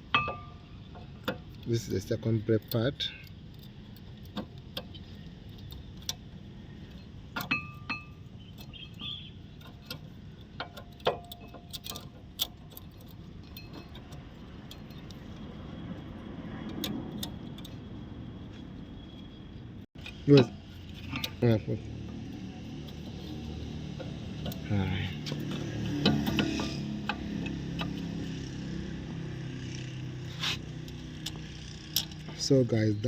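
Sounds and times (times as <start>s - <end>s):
metallic clicks and clinks: 9.6s - 15.4s.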